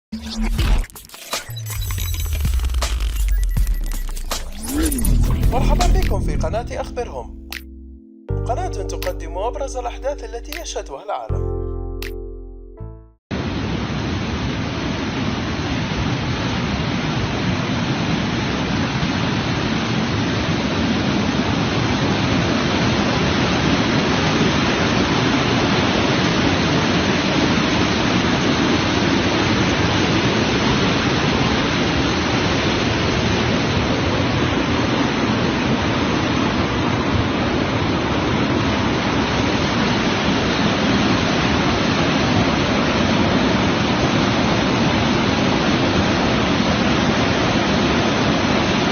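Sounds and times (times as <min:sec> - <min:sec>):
water rushing through a dam: 0:13.4 - 0:48.9.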